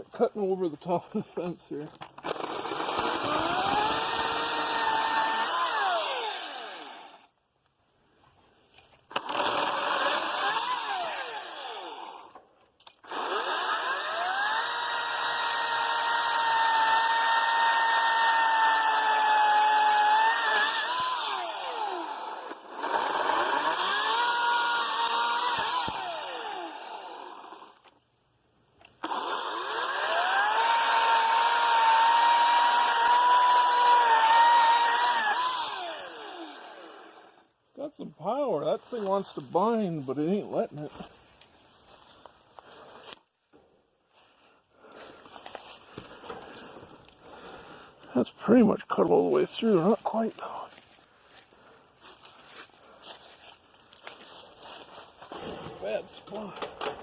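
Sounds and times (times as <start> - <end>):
battery chainsaw cutting wood: 2.2 - 7.3, 9.1 - 27.9, 28.9 - 37.5, 55.3 - 57.0.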